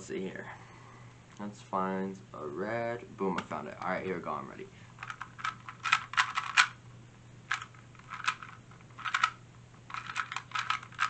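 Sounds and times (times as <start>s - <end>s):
plastic puzzle cube clicking: 5.0s - 6.8s, 7.5s - 11.0s.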